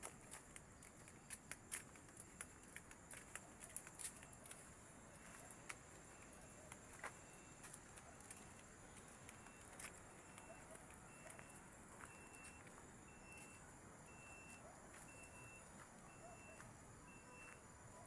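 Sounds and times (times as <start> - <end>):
light clicks and rustles: 0.0 - 12.8
insect chorus: 0.0 - 18.0.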